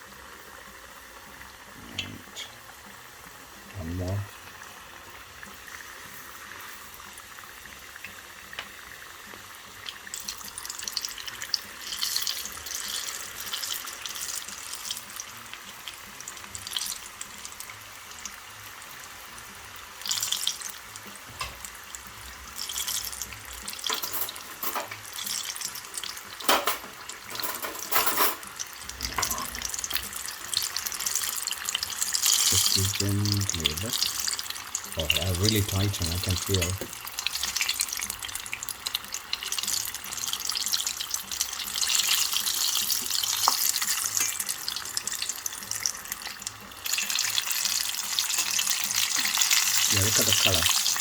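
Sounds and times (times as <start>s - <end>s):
food deep-frying in oil: 0.0s - 51.0s
oil crackling: 28.5s - 51.0s.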